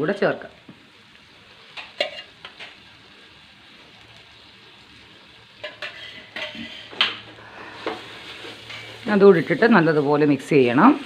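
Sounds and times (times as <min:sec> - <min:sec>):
spices sizzling in a pan: 0:00.0 - 0:11.0
metal spoon scraping a pan: 0:01.7 - 0:02.9, 0:05.6 - 0:10.2.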